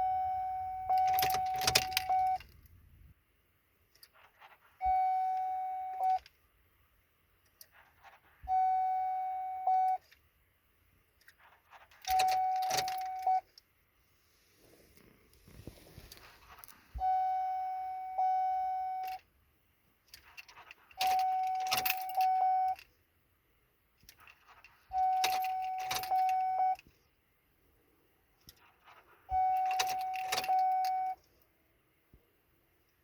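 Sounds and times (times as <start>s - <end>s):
keys jangling in ignition: 0.9s - 2.8s, 11.2s - 13.6s, 19.0s - 19.3s, 20.0s - 22.9s, 24.0s - 26.9s, 28.4s - 31.3s.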